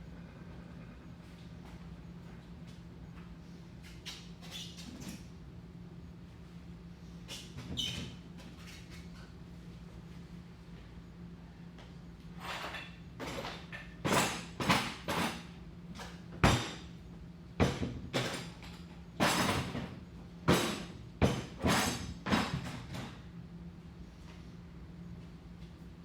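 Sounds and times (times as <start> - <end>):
faint steady hum: 0.0 - 14.2.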